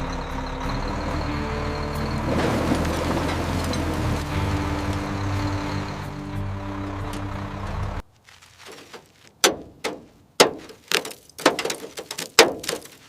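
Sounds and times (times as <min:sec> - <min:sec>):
music with low drone: 0:00.0 - 0:08.0.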